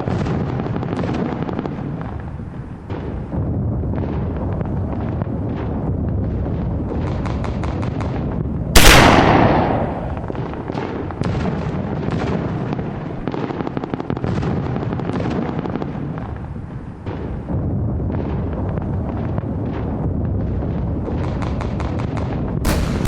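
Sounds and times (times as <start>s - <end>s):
rumbling background: 0.0s - 23.0s
loud explosion: 8.8s - 12.8s
gunshots cracking: 8.8s - 16.2s, 21.3s - 23.0s.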